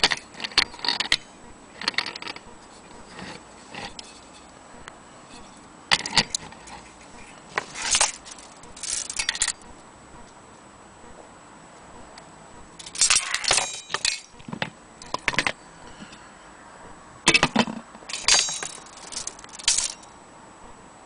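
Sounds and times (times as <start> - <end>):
metal clock parts clinking: 0.0 - 4.5, 5.4 - 9.6, 12.8 - 15.6, 17.3 - 20.1.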